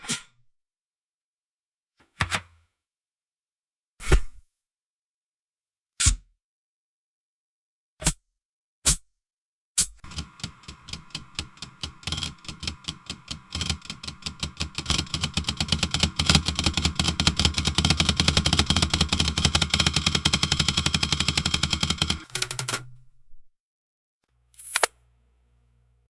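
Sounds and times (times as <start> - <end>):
machine hum: 10.0 - 22.7
packaging machine clatter: 10.0 - 22.8.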